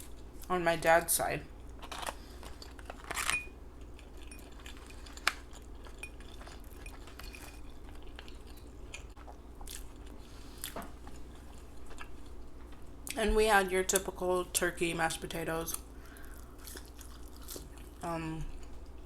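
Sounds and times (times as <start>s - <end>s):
person chewing food: 1.6s - 13.2s, 15.7s - 19.0s.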